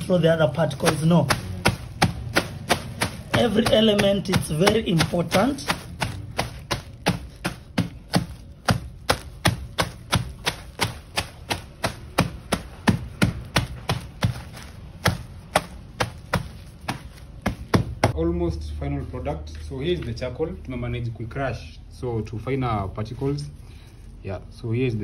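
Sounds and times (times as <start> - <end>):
charcoal being pounded: 0.0 - 18.2.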